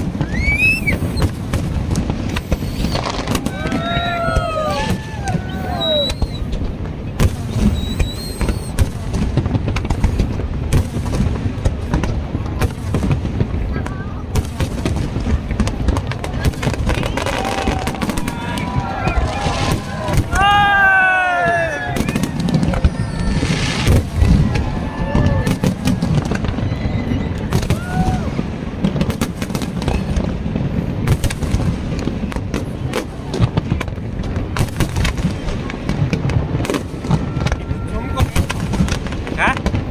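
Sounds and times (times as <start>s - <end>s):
fireworks bangs: 0.0s - 39.9s
faint high whistle: 0.2s - 1.3s, 5.4s - 6.5s, 7.6s - 8.8s.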